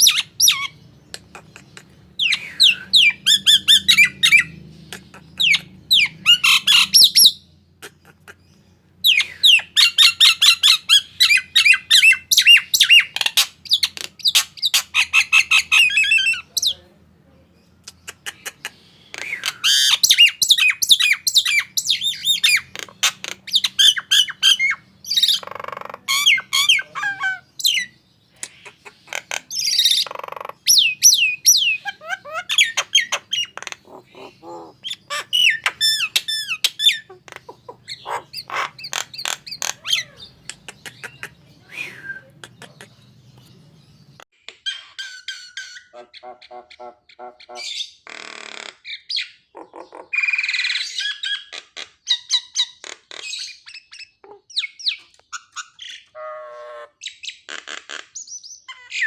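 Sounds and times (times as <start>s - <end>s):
starling whistles and chirps: 0.0s - 7.5s, 9.1s - 16.8s, 19.0s - 46.0s
bird squawks: 0.0s - 16.8s, 17.9s - 43.1s, 44.6s - 59.0s.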